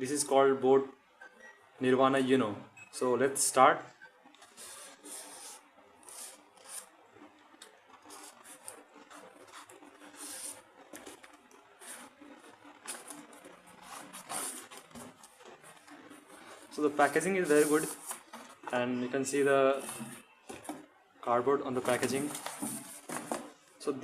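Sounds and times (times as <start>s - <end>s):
cardboard packaging rustling: 4.4s - 7.0s, 7.6s - 20.9s, 21.8s - 23.6s.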